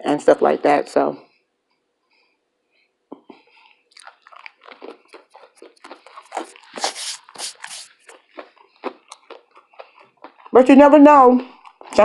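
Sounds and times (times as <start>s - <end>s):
person chewing crunchy food: 3.4s - 12.0s.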